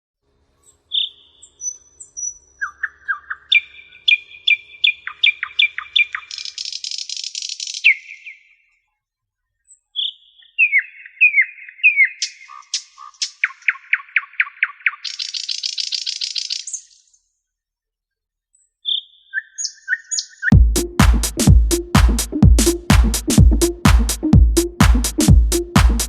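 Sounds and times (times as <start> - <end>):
bird chirping and whistling: 0.9 - 8.4, 10.0 - 17.0, 18.9 - 20.5.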